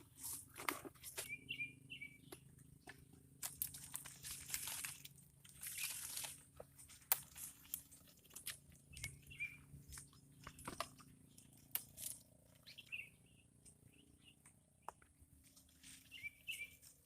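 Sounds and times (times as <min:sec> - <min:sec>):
small bird chirping: 0:00.1 - 0:03.8, 0:07.4 - 0:17.0.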